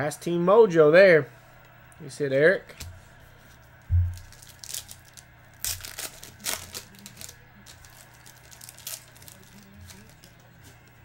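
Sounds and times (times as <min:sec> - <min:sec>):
foil wrappers crinkling and tearing: 0:04.0 - 0:11.0.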